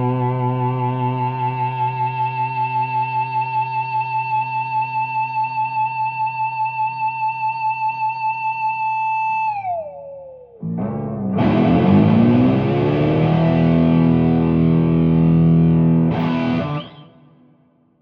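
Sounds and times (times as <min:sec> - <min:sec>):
distorted guitar chord: 0:00.0 - 0:02.8, 0:10.6 - 0:17.2
electric guitar note with vibrato: 0:10.6 - 0:17.2.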